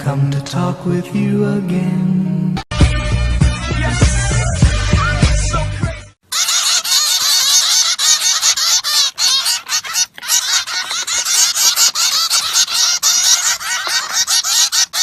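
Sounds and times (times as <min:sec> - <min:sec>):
bird chirping rapidly: 0:06.2 - 0:15.0.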